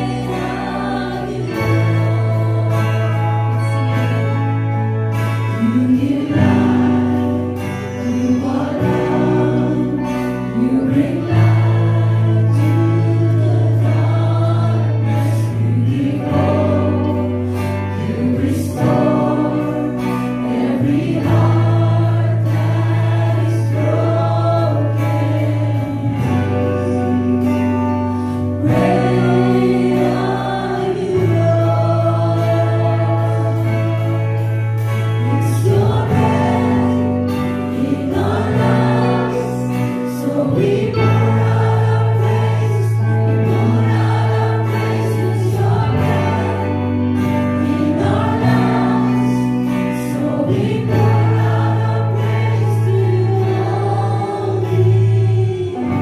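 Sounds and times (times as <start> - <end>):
group of voices singing: 0.0 - 56.0.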